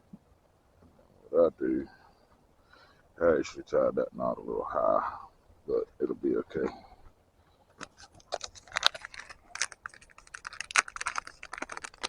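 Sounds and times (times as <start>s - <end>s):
fishing tackle clicking and rustling: 7.7s - 12.0s.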